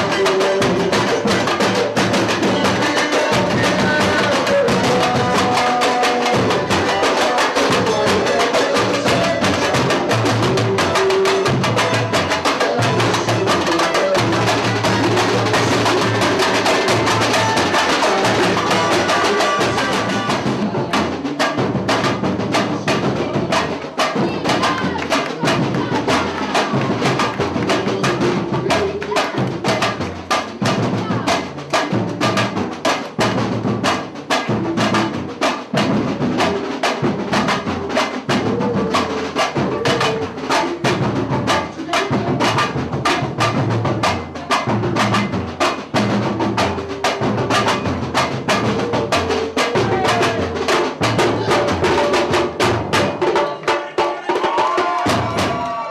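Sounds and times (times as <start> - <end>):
samba music with live percussion: 0.0 - 55.9.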